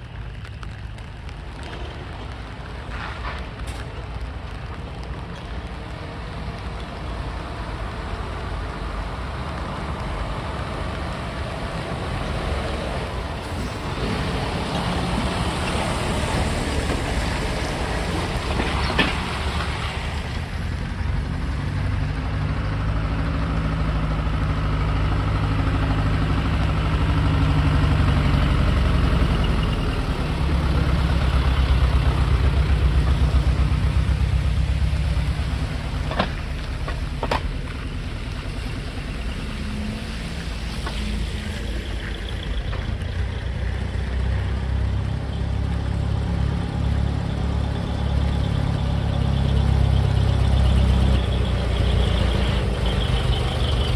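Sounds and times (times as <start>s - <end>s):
truck diesel engines running: 0.0s - 53.9s
hiss: 11.7s - 20.4s.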